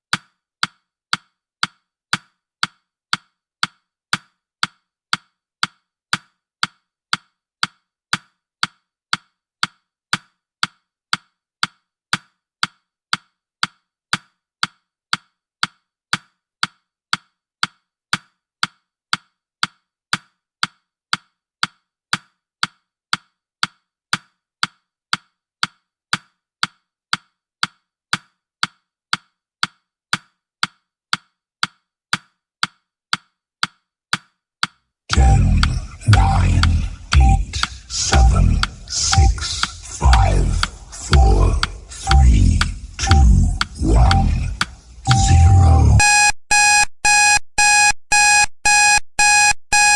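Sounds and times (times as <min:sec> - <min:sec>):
countdown timer ticking: 0:35.1 - 0:49.9.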